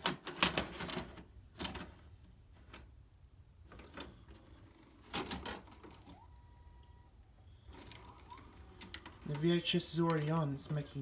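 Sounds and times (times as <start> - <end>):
cassette mechanism clicking and clunking: 7.8 - 11.0.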